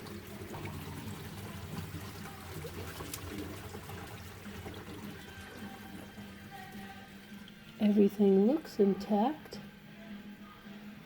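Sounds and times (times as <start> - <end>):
water draining down sink: 0.0 - 8.8.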